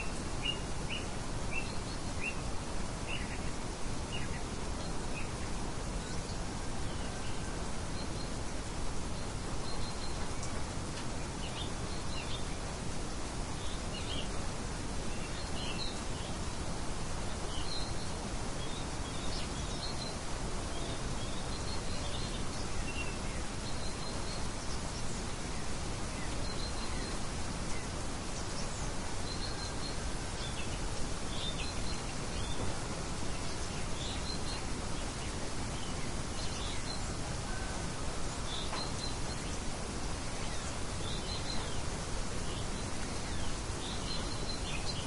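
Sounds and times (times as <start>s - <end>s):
small birds chirping: 0.0s - 45.0s
wind: 0.0s - 45.0s.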